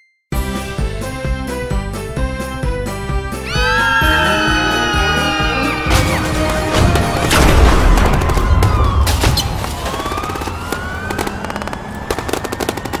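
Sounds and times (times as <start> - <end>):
sharp bangs: 5.8 - 13.0
heavy boom: 5.9 - 9.8
rapid gunfire-like rattle: 6.8 - 13.0.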